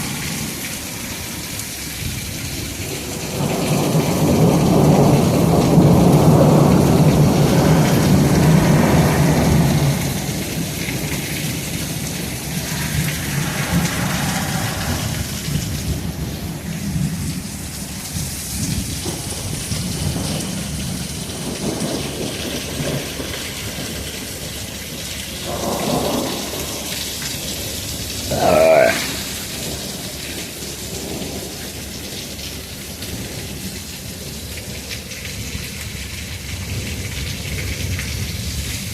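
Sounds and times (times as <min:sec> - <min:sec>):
heavy rain: 0:00.0 - 0:38.9
thunder rumbling: 0:00.0 - 0:38.9.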